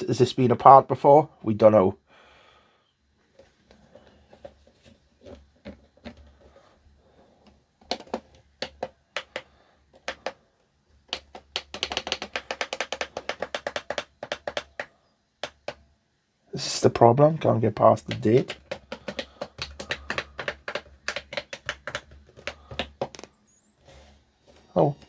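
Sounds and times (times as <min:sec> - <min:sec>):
plastic radio buttons clicking: 0:11.1 - 0:15.8, 0:17.8 - 0:23.2.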